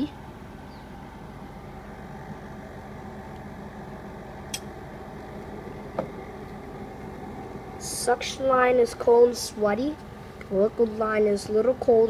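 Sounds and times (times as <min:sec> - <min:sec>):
air conditioner humming: 0:00.0 - 0:12.0.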